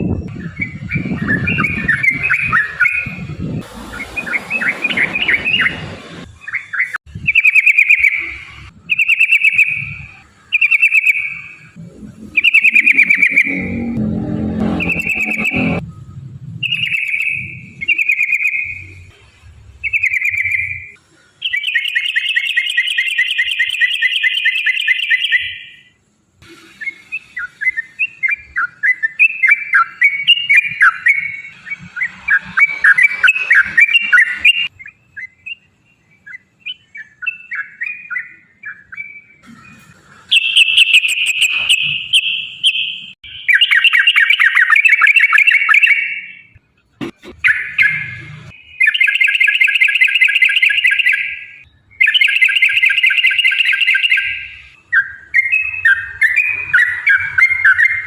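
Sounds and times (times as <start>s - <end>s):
bird singing rapid trills: 6.4s - 15.8s, 16.6s - 19.0s, 19.8s - 25.9s, 26.9s - 39.7s.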